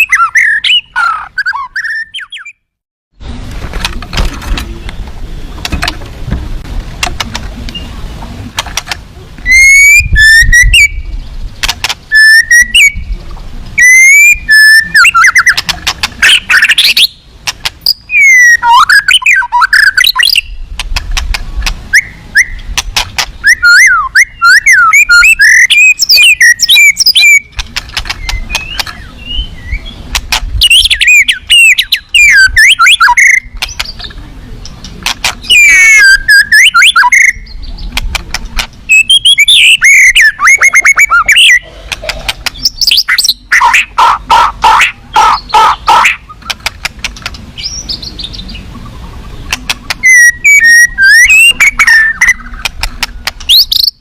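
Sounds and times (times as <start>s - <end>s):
bird singing whistled song: 0.0s - 2.6s, 7.7s - 7.9s, 9.4s - 11.1s, 12.1s - 13.2s, 13.8s - 15.6s, 16.2s - 17.3s, 17.9s - 20.6s, 21.9s - 22.7s, 23.4s - 27.5s, 28.2s - 30.0s, 30.6s - 34.1s, 35.4s - 37.9s, 38.9s - 41.6s, 42.6s - 43.6s, 47.6s - 48.6s, 50.0s - 52.7s, 53.5s - 54.0s
bird clicks and chips: 11.6s - 12.9s, 14.5s - 18.0s, 24.9s - 29.0s, 31.6s - 43.7s, 45.9s - 47.4s, 51.6s - 54.0s.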